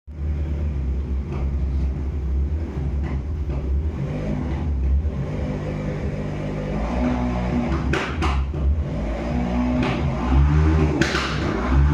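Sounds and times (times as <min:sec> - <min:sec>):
steady low rumble: 0:00.1 - 0:07.7.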